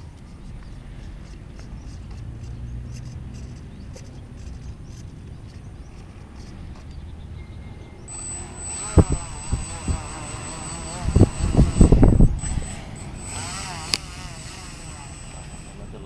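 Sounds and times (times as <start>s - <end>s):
wind on microphone: 8.1s - 15.7s.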